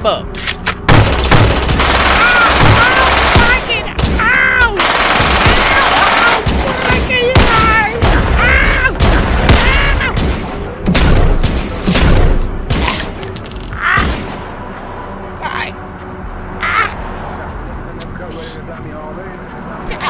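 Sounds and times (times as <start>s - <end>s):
rapid gunfire: 0.9s - 8.3s
person crying out: 7.9s - 10.2s.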